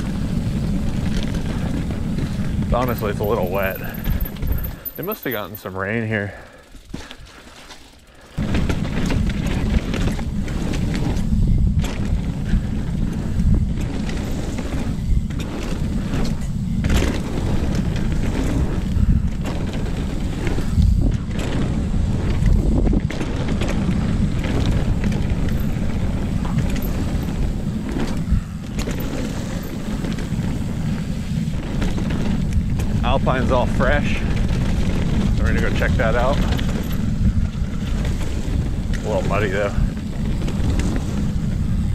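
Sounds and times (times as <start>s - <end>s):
wind buffeting microphone: 0.0s - 5.4s, 8.4s - 41.9s
bike knocking and rattling: 0.0s - 41.9s.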